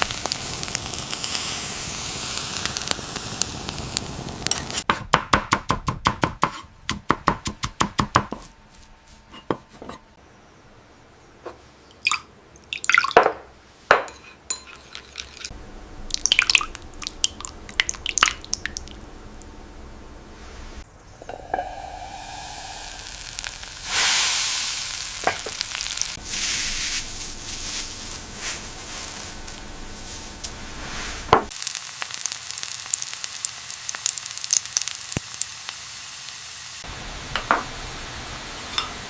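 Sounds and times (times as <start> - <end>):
food sizzling: 0.0 - 4.9, 14.4 - 39.0
knife chopping on cutting board: 4.9 - 8.5
utensils and dishes clinking: 13.2 - 15.5, 38.7 - 39.0.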